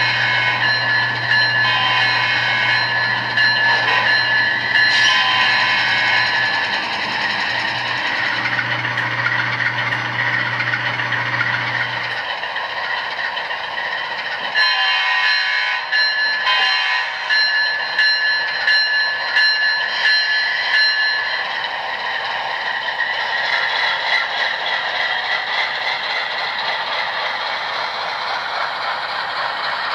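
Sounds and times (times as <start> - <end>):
multi-tone ringing warning sound: 0.0 - 8.6
model locomotive engine hum: 0.0 - 29.9.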